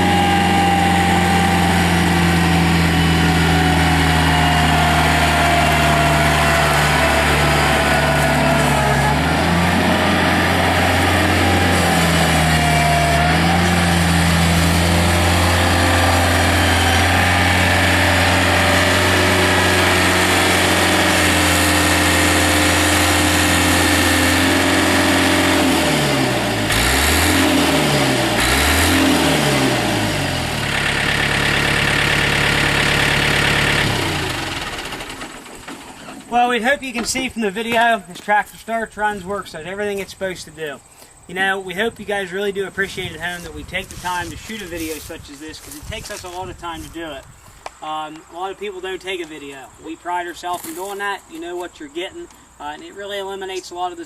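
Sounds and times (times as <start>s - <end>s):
diesel engine running: 0.0s - 37.4s.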